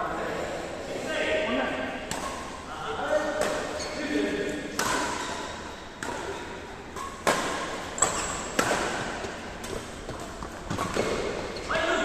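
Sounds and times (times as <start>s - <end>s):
badminton racket hits: 2.0s - 2.6s, 3.2s - 3.8s, 4.4s - 11.6s.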